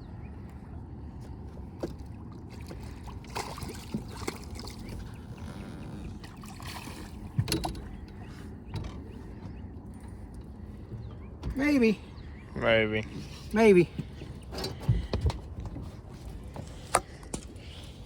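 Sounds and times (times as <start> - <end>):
water lapping: 0.0 - 18.0
wind: 0.0 - 18.0
sharp knocks on boat: 7.2 - 9.6.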